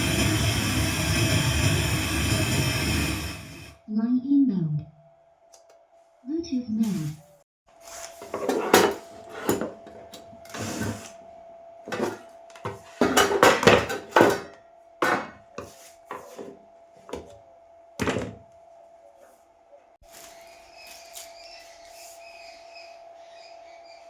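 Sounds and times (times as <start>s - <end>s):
handling clatter and knocks: 11.9s - 15.4s.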